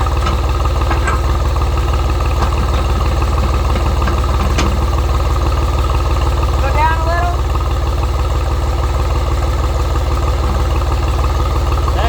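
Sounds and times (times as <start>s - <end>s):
tractor engine idling: 0.0s - 12.0s.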